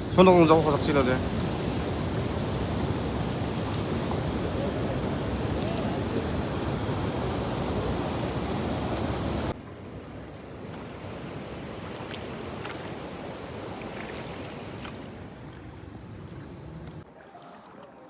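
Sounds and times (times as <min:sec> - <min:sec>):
wind buffeting microphone: 0:00.0 - 0:09.6
light water splashes: 0:00.0 - 0:18.0
water around a boat: 0:00.0 - 0:18.0.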